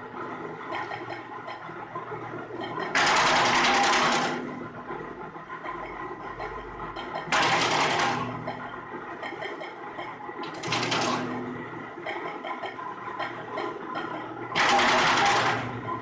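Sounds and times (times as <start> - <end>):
wood chipper running: 2.9 - 4.6, 14.5 - 15.8
wood chipper grinding wood: 14.6 - 15.8.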